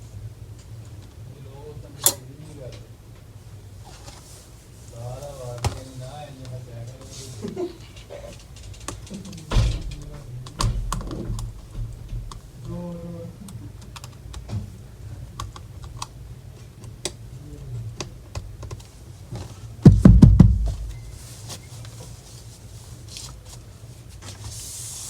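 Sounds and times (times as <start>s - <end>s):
louder knocks: 9.5s - 12.7s, 19.9s - 21.1s.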